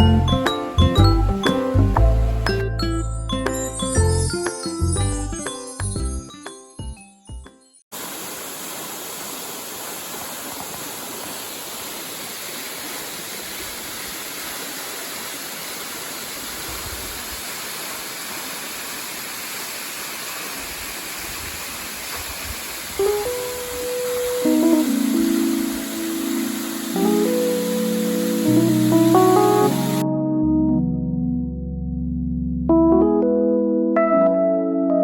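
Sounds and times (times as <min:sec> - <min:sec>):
waterfall rushing: 0:08.0 - 0:30.0.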